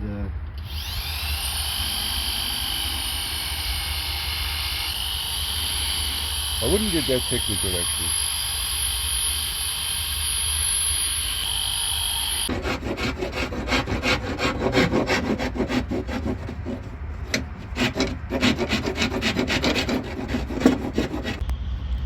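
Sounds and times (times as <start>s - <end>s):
power tool whining: 0.6s - 12.5s
hand file rasping: 12.5s - 21.4s.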